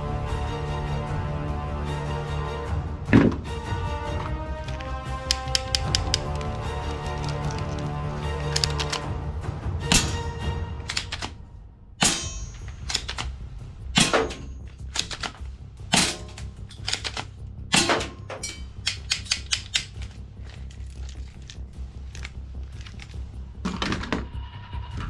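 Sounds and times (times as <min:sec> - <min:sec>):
toy guns firing: 0:05.2 - 0:06.6, 0:08.4 - 0:09.1, 0:09.9 - 0:10.3, 0:10.9 - 0:11.4, 0:12.0 - 0:13.3, 0:14.0 - 0:20.2.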